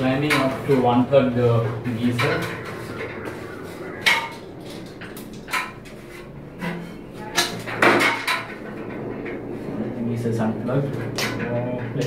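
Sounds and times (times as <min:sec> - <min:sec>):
knocks and clatters: 0:00.0 - 0:12.0.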